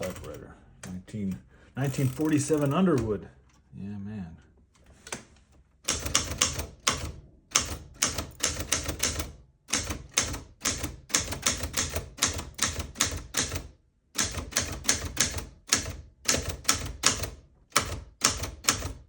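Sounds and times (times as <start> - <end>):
manual typewriter key strikes: 5.8 - 19.0.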